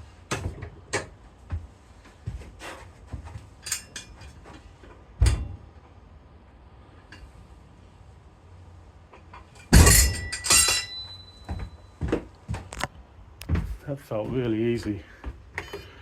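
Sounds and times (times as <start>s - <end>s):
metal clinks and knocks: 3.3s - 5.6s, 9.1s - 12.2s
heavy thud: 9.7s - 10.3s.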